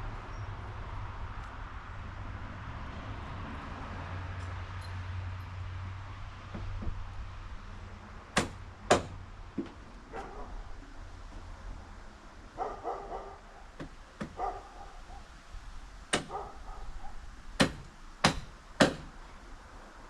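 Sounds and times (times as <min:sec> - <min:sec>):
hammer striking wood: 0:08.4 - 0:09.8, 0:13.8 - 0:14.5, 0:16.1 - 0:16.4, 0:17.6 - 0:19.2
dog barking: 0:10.1 - 0:10.7, 0:12.6 - 0:15.3, 0:16.2 - 0:17.3.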